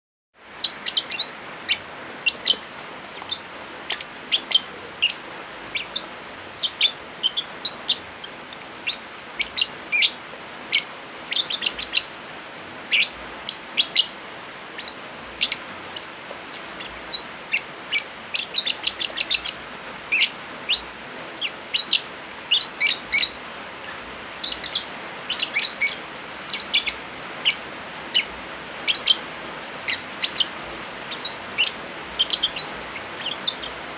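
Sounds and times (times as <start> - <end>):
birds chirping: 0.4 - 33.9
rain hissing: 0.4 - 33.9.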